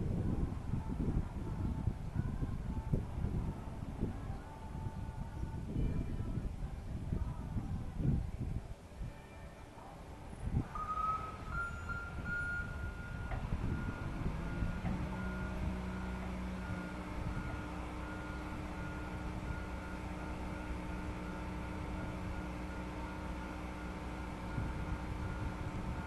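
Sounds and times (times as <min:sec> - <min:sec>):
low motor hum: 0:00.0 - 0:09.2, 0:09.8 - 0:26.0
warning beeper short beeps: 0:10.8 - 0:16.1.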